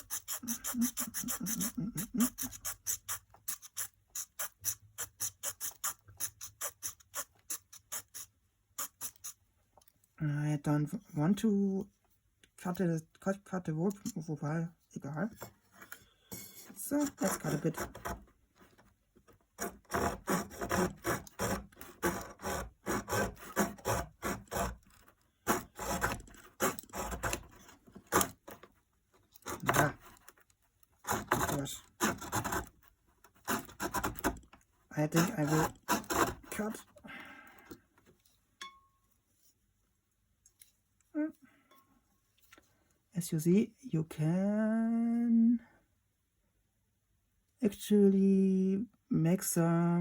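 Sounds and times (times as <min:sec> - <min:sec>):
saw rasping through wood: 0:00.0 - 0:09.4, 0:16.8 - 0:18.3, 0:19.6 - 0:28.6, 0:29.4 - 0:30.2, 0:31.0 - 0:34.4, 0:35.0 - 0:36.8.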